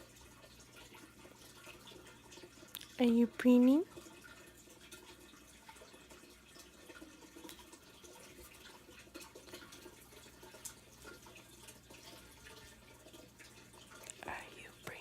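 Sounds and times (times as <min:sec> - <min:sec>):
low steady hum: 0:07.4 - 0:15.0.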